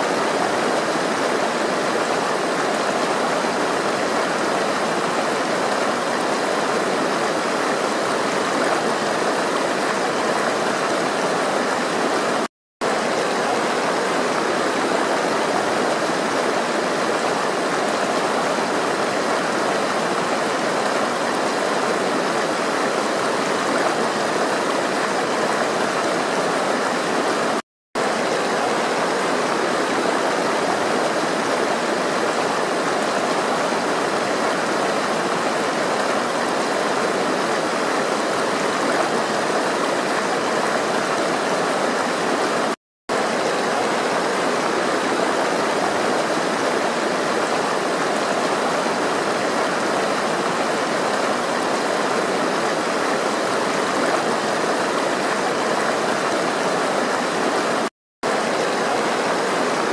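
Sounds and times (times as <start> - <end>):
rushing stream: 0.0 - 59.9.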